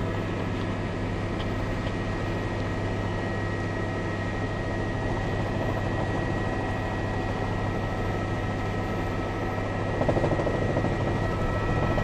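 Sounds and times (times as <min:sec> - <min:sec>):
helicopter running: 0:02.7 - 0:12.0.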